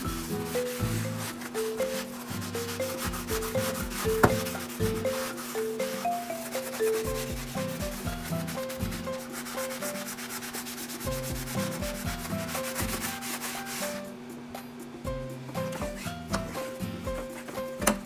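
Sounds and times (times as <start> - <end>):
scrubbing a drain pan: 0.0 - 14.2
light background music: 0.0 - 18.0.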